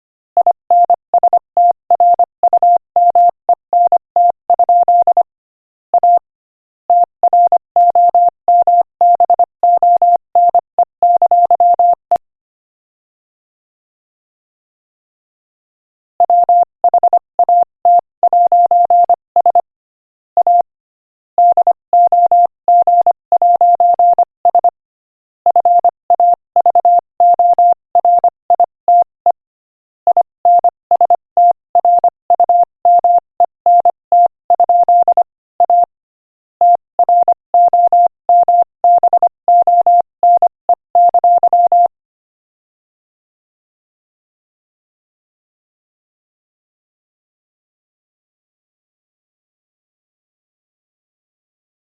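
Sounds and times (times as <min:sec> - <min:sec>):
morse code beeps: 0:00.4 - 0:05.3, 0:06.0 - 0:06.2, 0:06.9 - 0:12.2, 0:16.2 - 0:19.7, 0:20.4 - 0:20.6, 0:21.4 - 0:24.8, 0:25.5 - 0:29.4, 0:30.1 - 0:35.9, 0:36.6 - 0:41.9.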